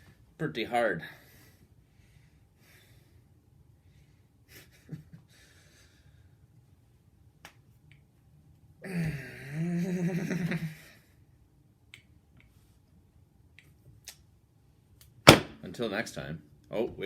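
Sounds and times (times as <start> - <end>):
man groaning: 8.8 - 10.5.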